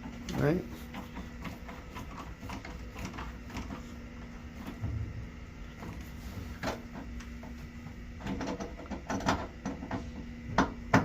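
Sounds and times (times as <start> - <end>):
knocks on a panel: 10.5 - 11.0.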